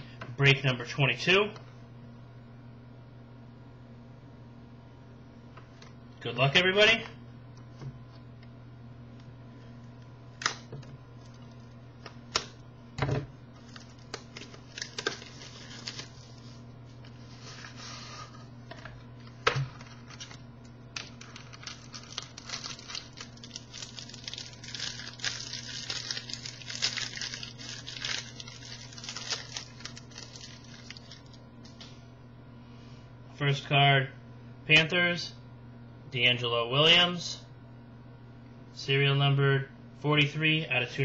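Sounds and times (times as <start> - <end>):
plastic wrapping tearing and crinkling: 13.6 - 16.6, 19.2 - 31.9.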